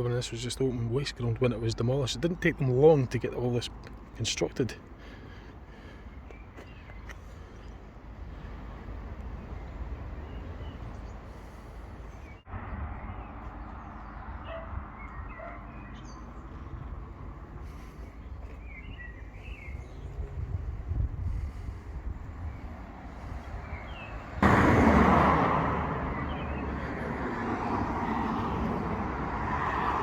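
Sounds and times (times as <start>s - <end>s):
distant traffic: 0.0s - 30.0s
wind rumble: 18.9s - 30.0s.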